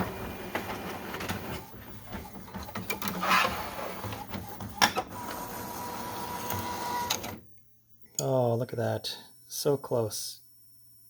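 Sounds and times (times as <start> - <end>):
inkjet printer printing: 0.0 - 7.4
printer whine: 0.0 - 7.4.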